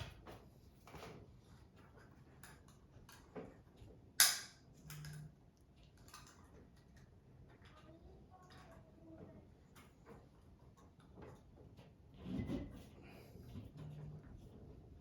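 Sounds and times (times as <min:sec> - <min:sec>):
small objects clicking and tapping: 0:01.9 - 0:08.9.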